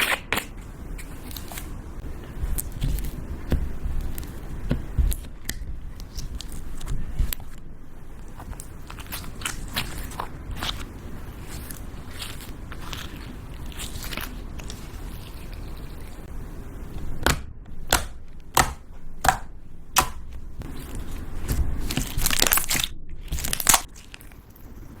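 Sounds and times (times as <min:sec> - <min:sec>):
slime crackling: 0:00.0 - 0:16.3, 0:17.8 - 0:25.0.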